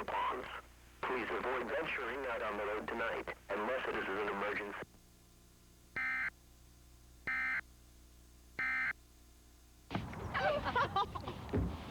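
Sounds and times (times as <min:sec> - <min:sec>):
broadcast programme sound: 0:00.0 - 0:04.8.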